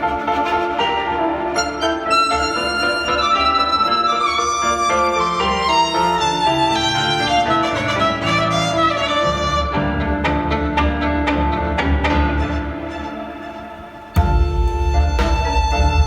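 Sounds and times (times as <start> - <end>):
violin melody with gliding notes: 0.0 - 16.0
bass line: 14.2 - 16.0.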